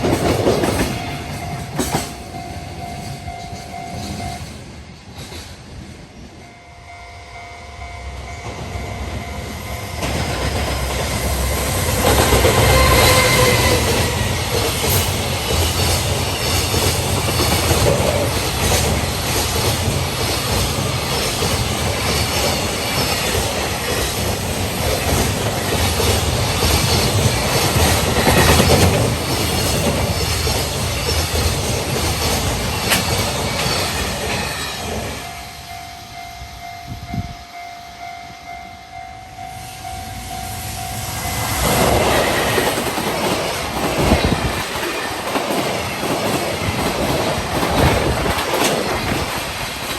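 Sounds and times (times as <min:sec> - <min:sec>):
freight train rumbling: 0:00.0 - 0:49.9
wheels clattering over rail joints: 0:41.6 - 0:49.9.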